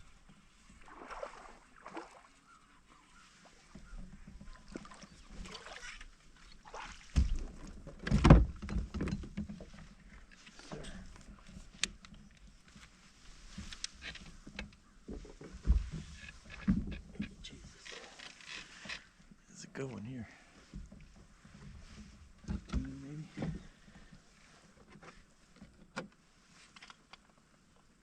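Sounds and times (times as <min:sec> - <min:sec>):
swishes and knocks on kayak hull: 0:00.0 - 0:19.2, 0:20.6 - 0:26.8.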